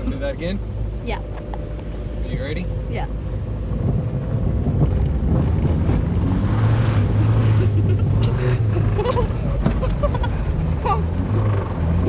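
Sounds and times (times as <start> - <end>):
car engine running hard: 0.0 - 12.0
wind buffeting microphone: 2.7 - 12.0.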